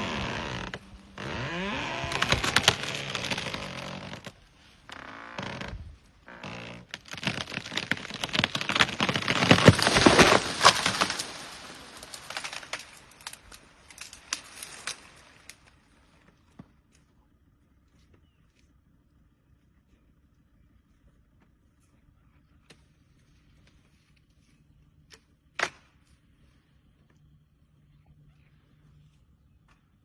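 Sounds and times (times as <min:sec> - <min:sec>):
tree wood cracking and snapping: 0:00.0 - 0:15.7
foliage rustling: 0:00.0 - 0:16.3.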